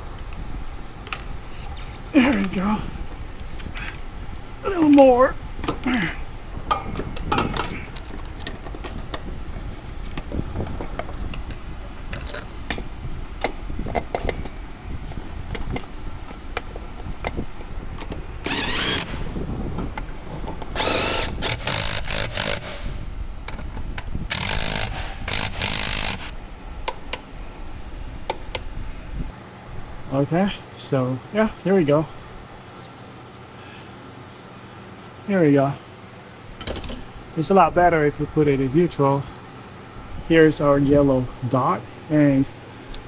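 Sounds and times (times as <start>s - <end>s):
power tool running: 18.4s - 19.5s, 20.8s - 23.1s, 24.3s - 26.3s.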